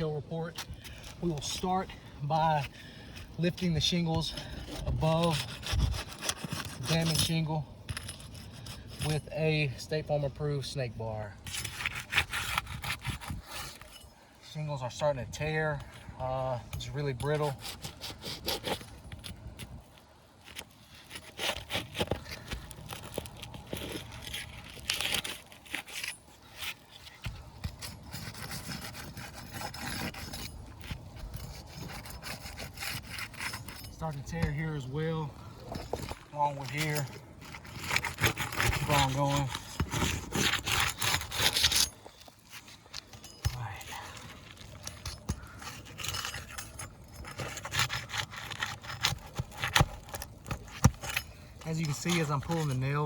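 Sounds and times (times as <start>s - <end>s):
pry bar scraping shingles: 0.0s - 53.0s
shingles cracking and tearing: 4.2s - 9.2s, 17.2s - 34.4s, 35.4s - 53.0s.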